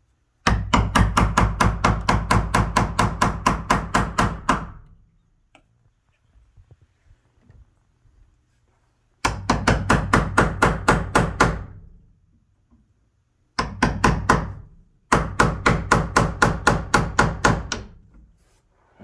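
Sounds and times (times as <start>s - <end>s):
hammer tapping chisel into wood: 0.4s - 4.8s, 9.2s - 11.6s, 13.6s - 18.0s.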